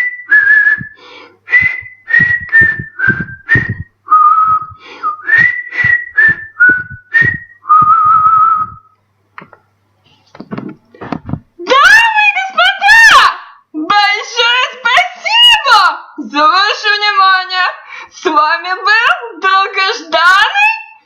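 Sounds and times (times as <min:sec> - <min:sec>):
man whistling a tune: 0:00.0 - 0:08.9.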